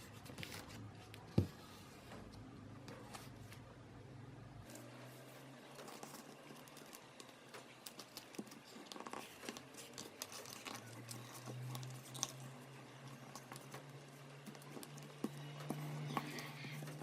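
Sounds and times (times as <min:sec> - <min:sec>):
paper crinkling and folding: 0:04.6 - 0:17.0.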